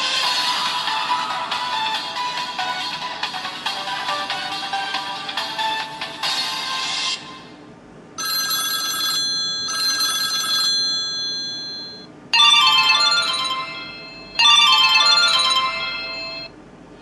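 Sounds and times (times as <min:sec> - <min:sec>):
brighter phone ringtone: 0:08.2 - 0:16.5
phone ringtone: 0:08.2 - 0:16.5.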